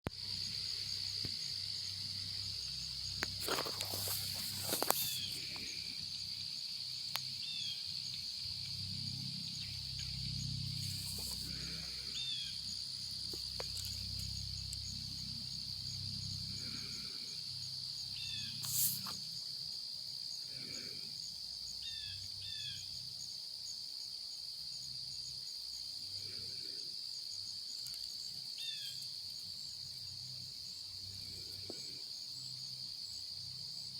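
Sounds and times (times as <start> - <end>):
insects chorus: 0.1 - 33.9
brief rustles: 3.4 - 5.6.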